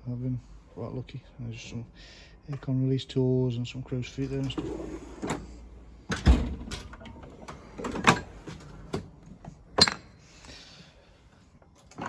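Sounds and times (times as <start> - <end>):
metal drawers knocking and clicking: 4.3 - 10.1
drawer sliding hiss: 4.5 - 5.6.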